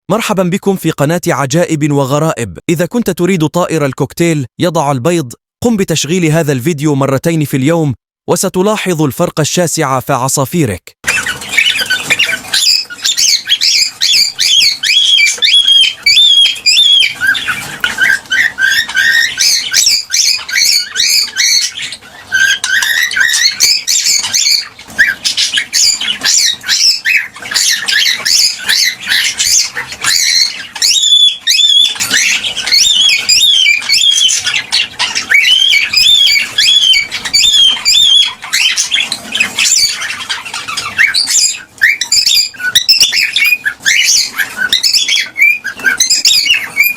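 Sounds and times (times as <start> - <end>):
cockatiels chirping: 11.0 - 46.9.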